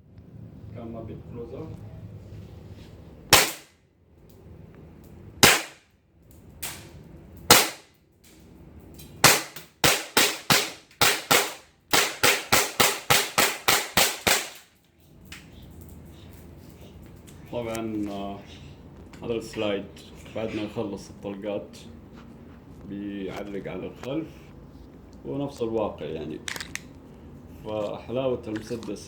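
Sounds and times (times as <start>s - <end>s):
airsoft pistol shots: 3.3s - 3.7s, 5.4s - 5.9s, 7.5s - 7.9s, 9.2s - 14.7s.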